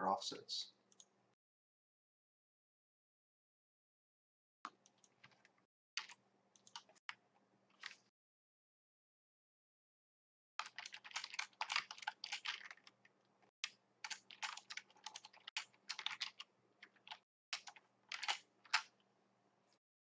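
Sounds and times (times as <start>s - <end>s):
computer keyboard typing: 4.7s - 7.0s, 7.8s - 8.0s, 10.6s - 19.0s.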